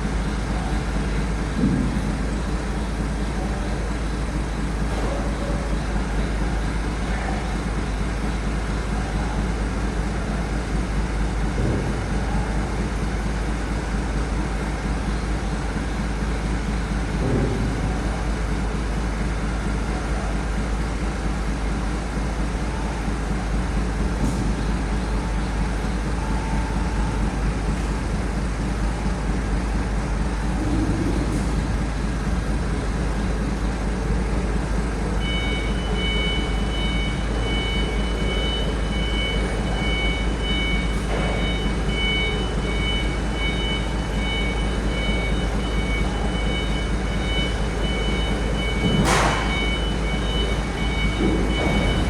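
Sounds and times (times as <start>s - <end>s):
short low thumps: 0.0s - 6.8s
heavy vehicle road rumble: 0.0s - 52.0s.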